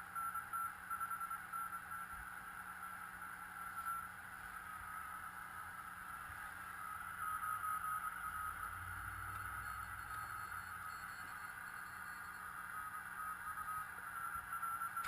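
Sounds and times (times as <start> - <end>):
faint morse code tone: 0.1 - 2.2, 3.1 - 4.2, 6.8 - 15.0.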